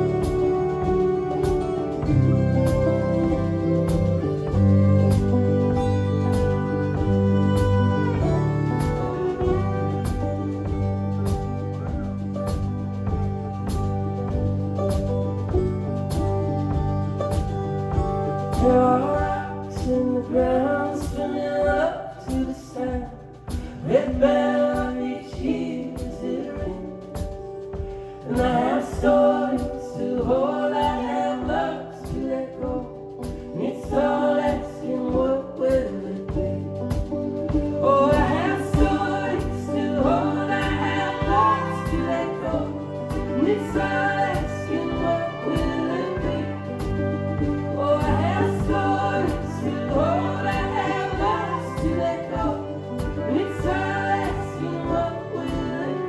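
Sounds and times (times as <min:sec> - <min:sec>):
steady beat: 0:00.0 - 0:18.8, 0:21.7 - 0:56.0
low bass line: 0:00.0 - 0:20.8
person singing: 0:00.0 - 0:56.0.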